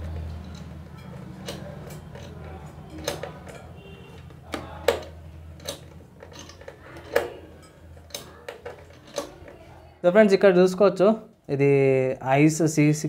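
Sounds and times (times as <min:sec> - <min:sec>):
hardware clicks and knocks: 0:00.0 - 0:09.9.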